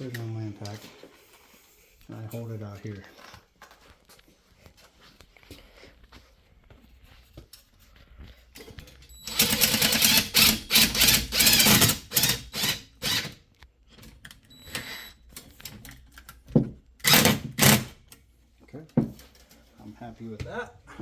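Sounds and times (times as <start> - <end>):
impact driver hammering screw: 9.2 - 13.4, 17.0 - 18.0.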